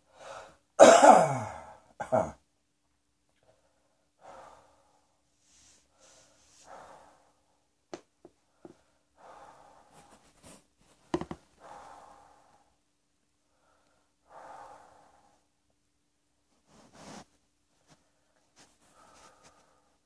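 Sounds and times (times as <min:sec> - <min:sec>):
person breathing in and out: 0:00.0 - 0:00.7, 0:03.4 - 0:07.7, 0:08.4 - 0:10.6, 0:11.5 - 0:12.8, 0:13.4 - 0:15.6, 0:17.9 - 0:20.0.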